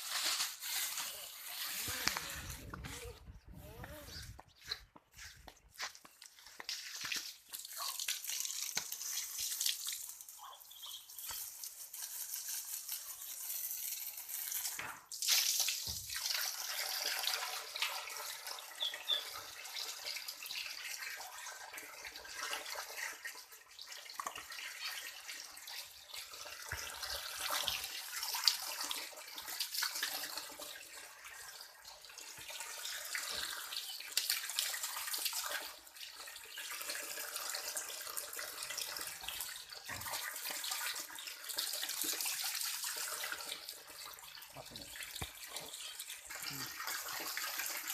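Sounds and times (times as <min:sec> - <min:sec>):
water splashing and trickling: 0:00.0 - 0:47.9.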